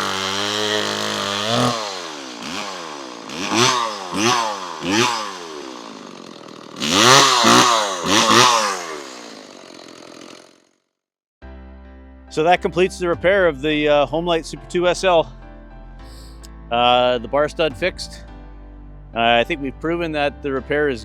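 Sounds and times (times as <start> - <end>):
chainsaw engine revving: 0.0 - 10.7.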